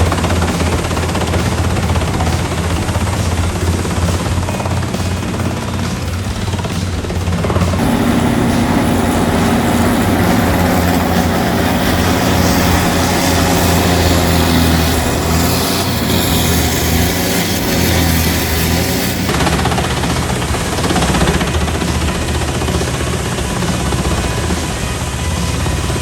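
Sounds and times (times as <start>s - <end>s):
chipper engine drone: 0.0s - 26.0s
hiss of wood chipping: 7.6s - 21.4s.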